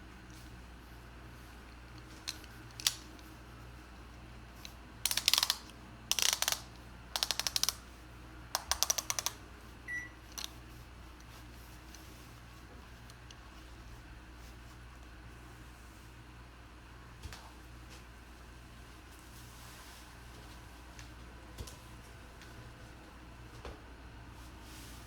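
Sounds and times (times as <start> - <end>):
ratchet belt buckle clicking: 2.0 - 3.3, 4.6 - 7.8, 8.6 - 9.4.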